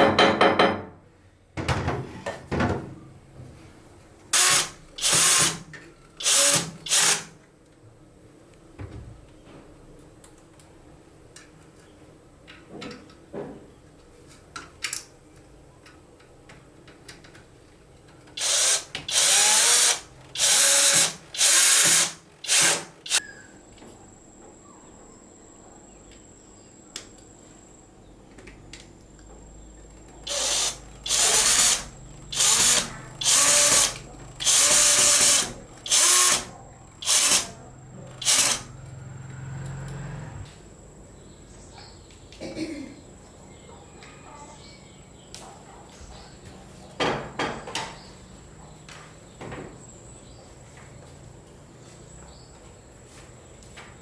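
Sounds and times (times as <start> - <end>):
power drill bursts: 4.4 - 5.6, 6.2 - 7.3, 18.4 - 23.2, 30.2 - 37.6, 38.2 - 38.8.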